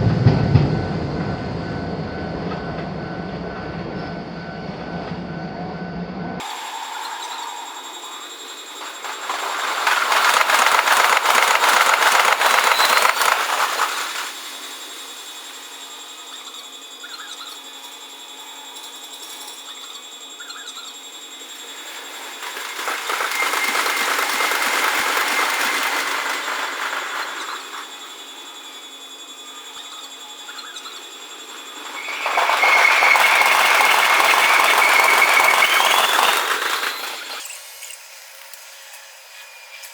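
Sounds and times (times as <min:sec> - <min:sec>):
train passing: 0:00.0 - 0:15.7, 0:21.5 - 0:28.7, 0:30.9 - 0:37.4
wheels clattering over rail joints: 0:06.4 - 0:14.4, 0:21.8 - 0:28.2, 0:31.6 - 0:37.4.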